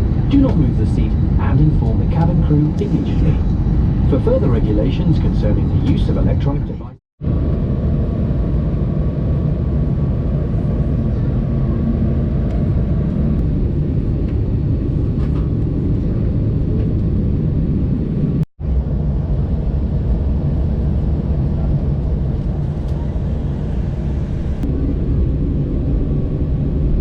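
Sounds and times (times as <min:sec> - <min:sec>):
airliner cabin engine rumble: 0:00.0 - 0:27.0.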